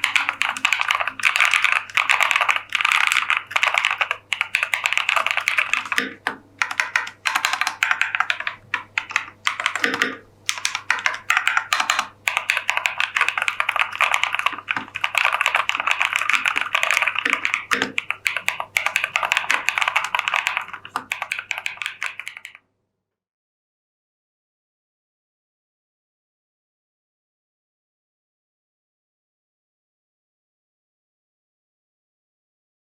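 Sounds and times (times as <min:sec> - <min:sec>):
mechanical keyboard typing: 0:00.0 - 0:22.6.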